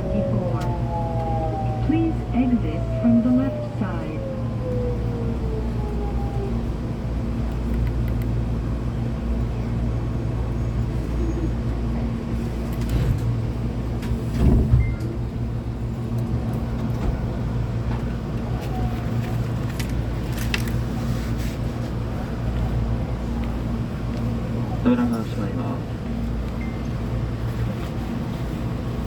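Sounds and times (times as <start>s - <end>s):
train equipment humming: 0.0s - 18.8s.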